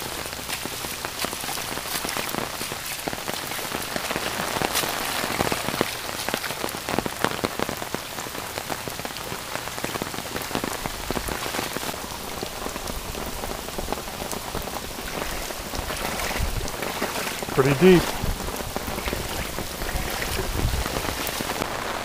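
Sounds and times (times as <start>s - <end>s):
close raindrop impacts: 0.0s - 22.0s
heavy rain falling: 0.0s - 22.0s.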